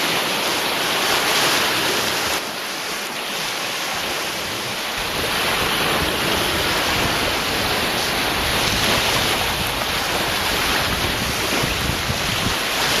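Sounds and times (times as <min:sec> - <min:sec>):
waves rushing: 0:00.0 - 0:13.0.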